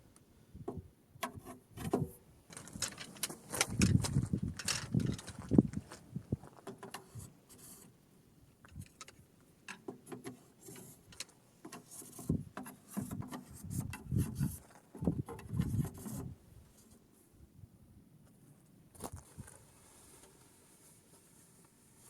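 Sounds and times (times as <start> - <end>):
hard parts clicking and tapping: 1.9 - 5.6, 8.6 - 11.9.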